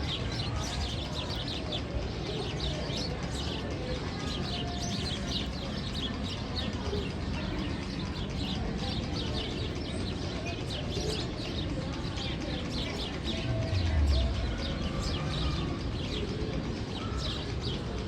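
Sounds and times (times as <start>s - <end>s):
low rumble: 13.1s - 16.0s.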